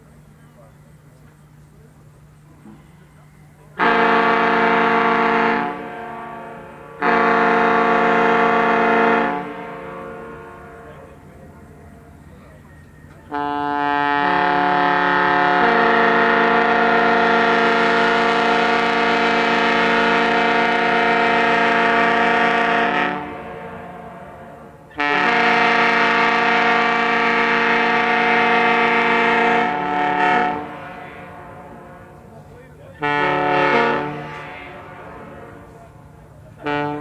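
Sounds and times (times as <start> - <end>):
compressed-air horn chord blasts: 3.8 - 11.0, 13.3 - 32.2, 33.0 - 35.8.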